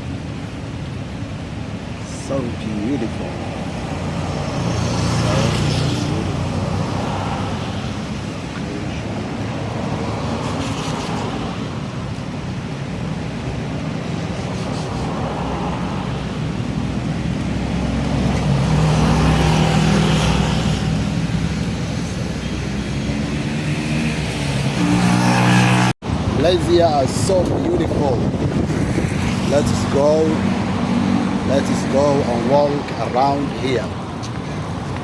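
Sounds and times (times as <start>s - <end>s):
road traffic noise: 0.0s - 35.0s
vehicle engine passing: 3.2s - 11.8s, 13.8s - 26.0s, 28.2s - 33.0s.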